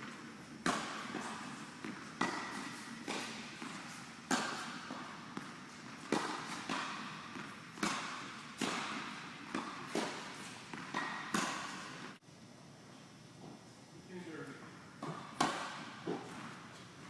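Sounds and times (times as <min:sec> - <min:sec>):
tennis ball being struck: 0:00.6 - 0:12.2, 0:15.0 - 0:16.3.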